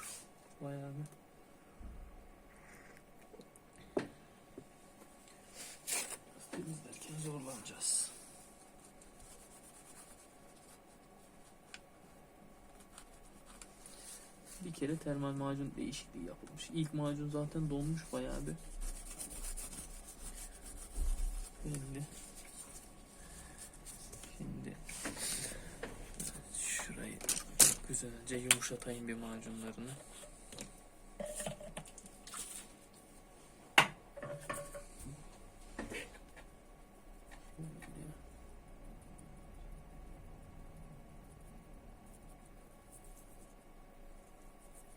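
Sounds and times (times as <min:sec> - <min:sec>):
rubbing and scratching thermal paste: 0:07.0 - 0:16.0, 0:17.0 - 0:24.3, 0:40.6 - 0:44.9.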